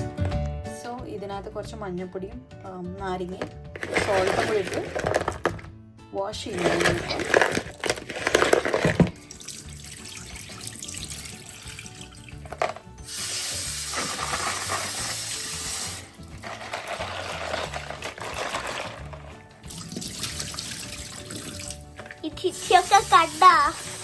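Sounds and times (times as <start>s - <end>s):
tap water splashing in sink: 6.5s - 24.0s.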